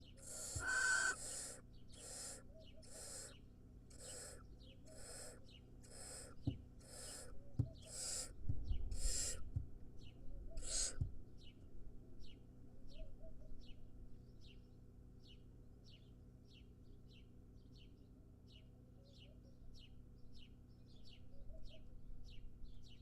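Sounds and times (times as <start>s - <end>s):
owl chick rasping hissing call: 0.0s - 9.5s, 10.5s - 11.0s.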